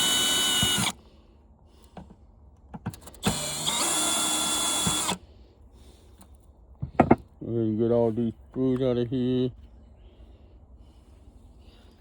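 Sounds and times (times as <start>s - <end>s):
power drill motor whine: 0.0s - 1.0s, 3.1s - 5.2s.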